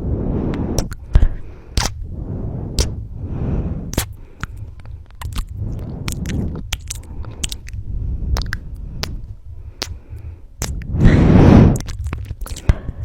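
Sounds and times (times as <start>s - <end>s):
lip smacking kisses: 0.8s - 2.0s, 8.4s - 9.2s.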